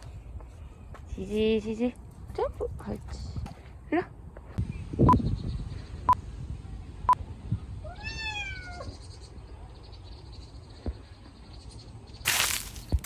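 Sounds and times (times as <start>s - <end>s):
cat meowing: 7.9s - 8.9s.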